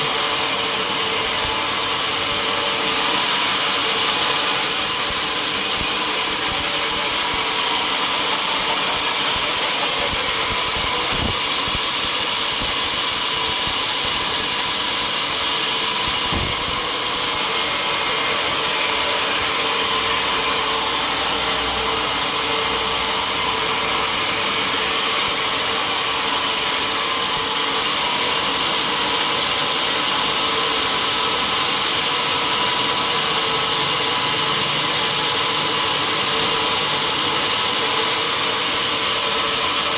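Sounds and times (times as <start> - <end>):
sawmill saw and motor: 0.0 - 39.9.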